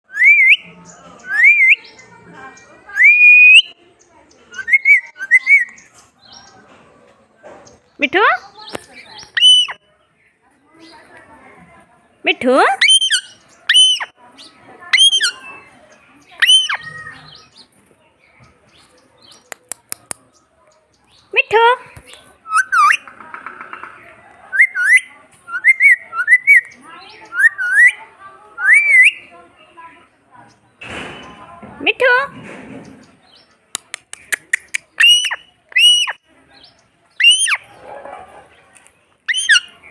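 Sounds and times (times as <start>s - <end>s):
parrot whistled calls: 0.1s - 1.9s, 2.9s - 3.7s, 4.6s - 5.7s, 9.3s - 9.8s, 12.8s - 14.1s, 14.9s - 15.6s, 16.4s - 17.1s, 22.5s - 23.0s, 24.5s - 26.7s, 27.3s - 28.0s, 28.6s - 29.2s, 34.5s - 36.2s, 37.2s - 37.7s, 39.3s - 39.7s.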